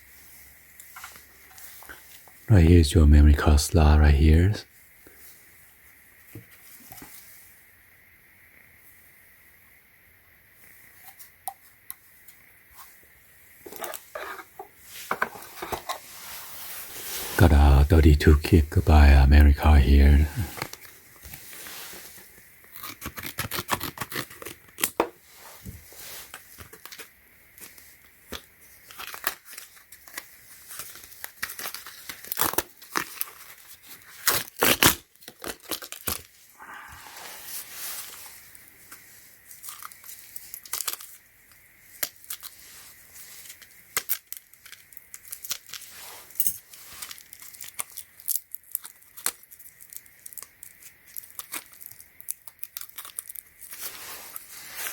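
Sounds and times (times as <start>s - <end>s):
packaging being torn open: 22.6s - 25.0s, 26.4s - 36.4s, 39.6s - 41.2s, 41.9s - 42.6s, 43.4s - 45.9s, 46.9s - 54.9s.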